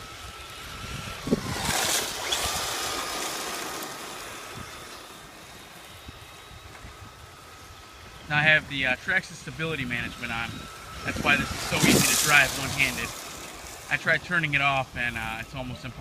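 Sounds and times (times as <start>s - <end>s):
electric motor whine: 0.0s - 16.0s
tyres crunching on gravel: 7.6s - 15.6s.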